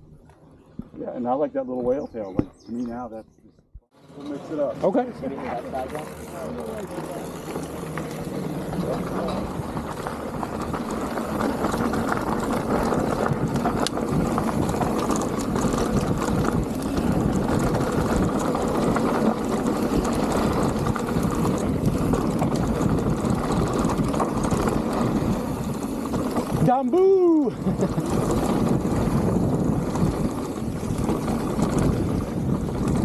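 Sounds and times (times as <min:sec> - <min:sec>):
bike rattling over bumps: 0:04.0 - 0:33.0
bike tyres rumbling on dirt: 0:04.0 - 0:33.0
wind on microphone: 0:08.2 - 0:33.0.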